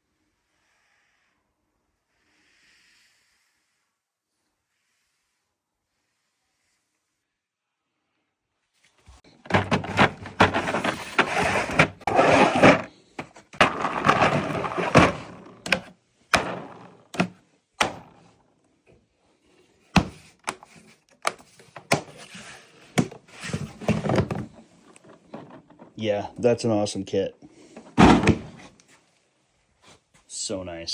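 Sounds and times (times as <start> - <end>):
tool case drawers sliding: 9.3 - 18.3, 20.0 - 26.0, 27.7 - 28.7
sharp knocks and clunks: 9.5 - 18.2, 20.0 - 20.7, 27.8 - 28.7
tools clattering: 9.5 - 18.2.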